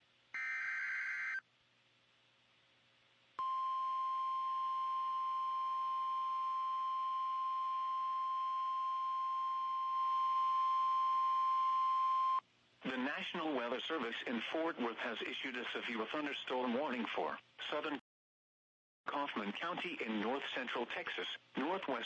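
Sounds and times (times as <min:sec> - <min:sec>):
steady warning alarm tone: 0:00.4 - 0:01.4.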